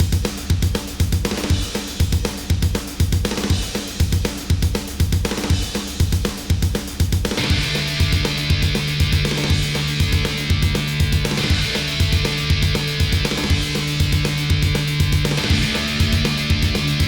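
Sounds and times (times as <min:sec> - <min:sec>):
driving drum beat: 0:00.0 - 0:17.0
distorted guitar and bass: 0:07.4 - 0:17.0.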